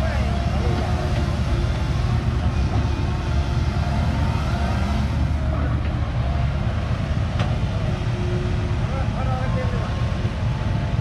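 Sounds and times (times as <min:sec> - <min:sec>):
excavator diesel engine rumbling: 0:00.0 - 0:11.0.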